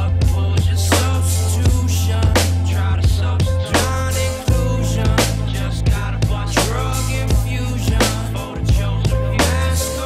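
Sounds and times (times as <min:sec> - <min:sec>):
held low bass line: 0:00.0 - 0:10.0
drum hits: 0:03.1 - 0:08.2.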